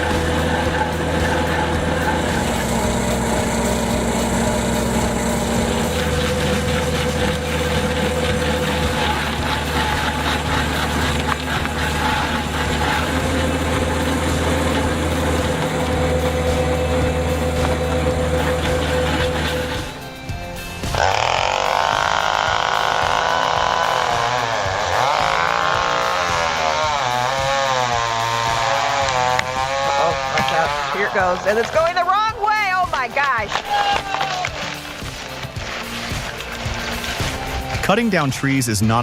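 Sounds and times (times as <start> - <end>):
machine engine running: 0.0 - 32.4, 34.6 - 38.3.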